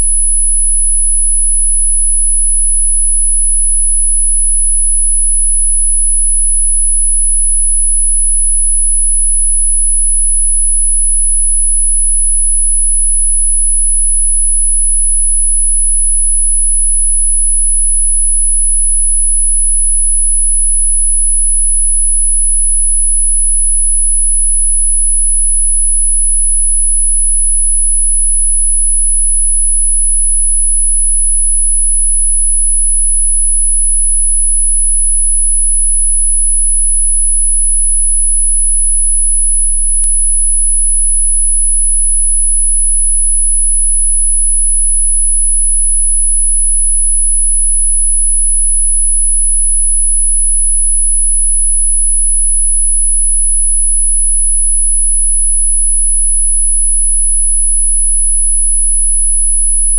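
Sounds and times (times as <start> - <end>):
high-pitched sine tone: 0.0 - 59.9.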